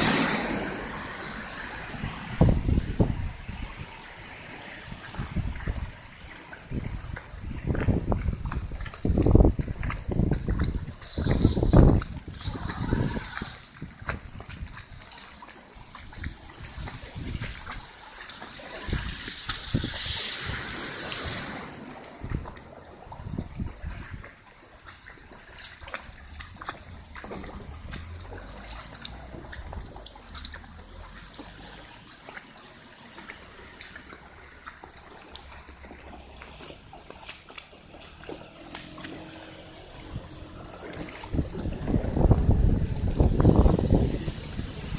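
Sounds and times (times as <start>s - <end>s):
wind buffeting microphone: 0.0s - 15.0s, 15.7s - 18.1s, 18.8s - 31.1s, 39.3s - 44.9s
rain splashing and dripping: 0.0s - 44.9s
water trickling: 0.0s - 44.9s.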